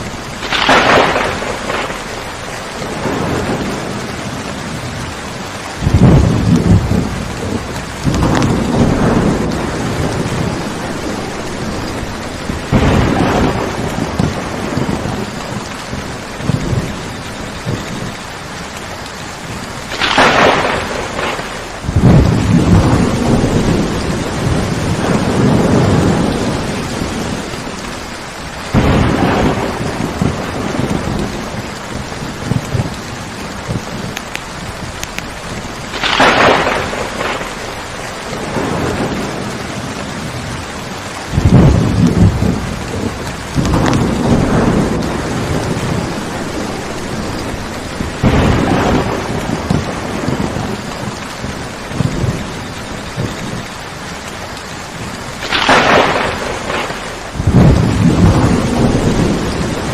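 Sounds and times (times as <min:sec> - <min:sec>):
steady rain: 0:00.0 - 0:59.9
thunder claps: 0:00.0 - 0:59.9
thunder rumbling: 0:00.0 - 0:59.9.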